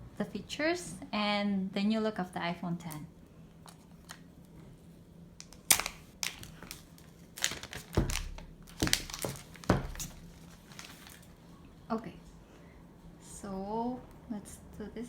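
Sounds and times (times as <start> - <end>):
plastic wrap crinkling: 5.4 - 11.4.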